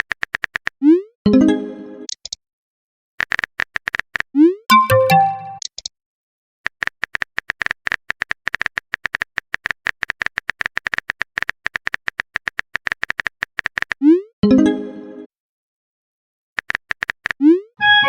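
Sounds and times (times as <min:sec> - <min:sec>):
rapid keyboard typing clicks: 0:00.0 - 0:00.8, 0:03.2 - 0:05.8, 0:06.7 - 0:14.0, 0:16.6 - 0:17.4.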